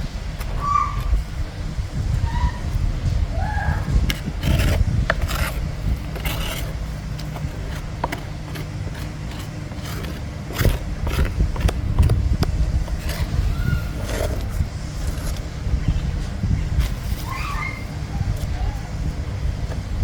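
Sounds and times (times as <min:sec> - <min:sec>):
steady low hum: 0:00.0 - 0:20.0
scraping strokes: 0:02.7 - 0:20.0.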